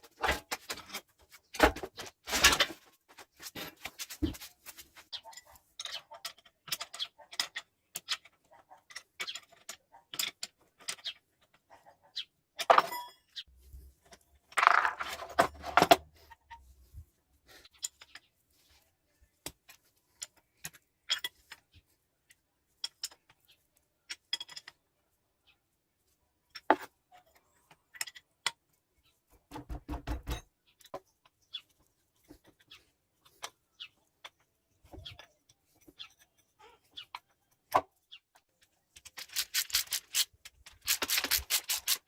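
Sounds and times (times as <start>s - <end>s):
metal tools clinking and knocking: 12.6s - 13.4s, 14.0s - 16.6s, 19.8s - 21.6s, 22.8s - 23.5s, 24.1s - 24.9s, 34.2s - 38.0s.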